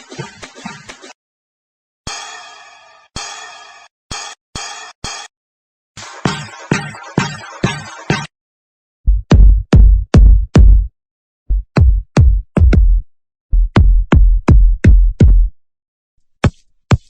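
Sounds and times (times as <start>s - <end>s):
kick drum hits: 9.1s - 10.9s, 11.5s - 13.0s, 13.6s - 15.5s.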